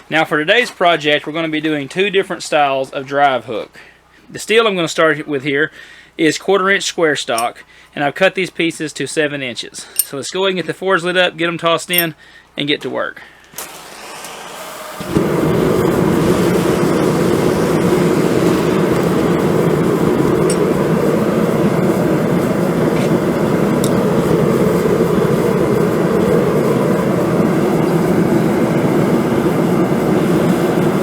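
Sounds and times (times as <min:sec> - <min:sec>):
forge rushing noise: 0:13.6 - 0:31.0.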